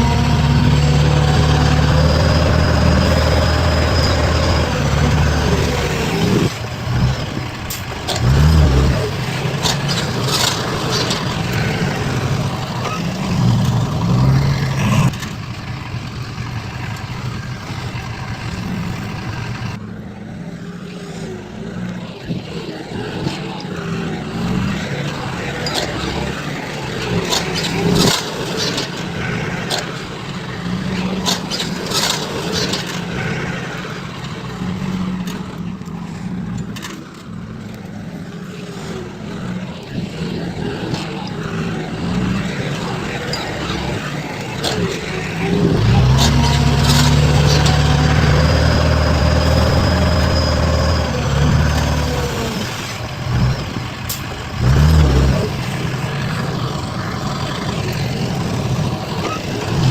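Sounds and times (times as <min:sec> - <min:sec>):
diesel machinery engines revving: 0:00.0 - 0:59.9
clanks and scrapes: 0:02.3 - 0:15.4, 0:31.0 - 0:33.4, 0:40.9 - 0:56.8.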